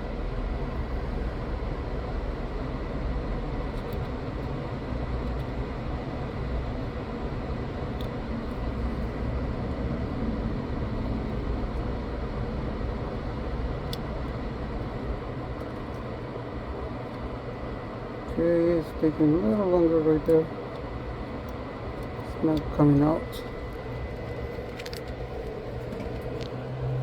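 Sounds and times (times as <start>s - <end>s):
hot air station blowing: 0.0s - 27.0s.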